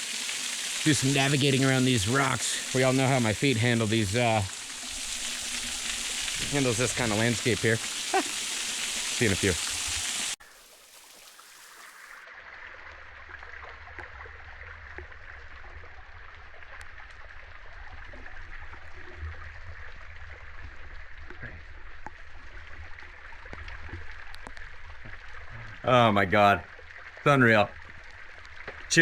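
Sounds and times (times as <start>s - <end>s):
waterfall rushing: 0.8s - 10.3s.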